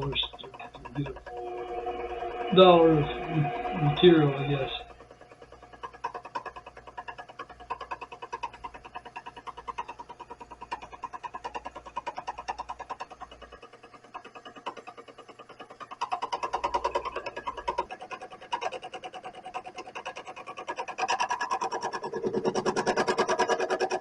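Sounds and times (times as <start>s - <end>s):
low hum: 0.0s - 18.0s
lathe cutting rhythmic clatter: 0.0s - 24.0s.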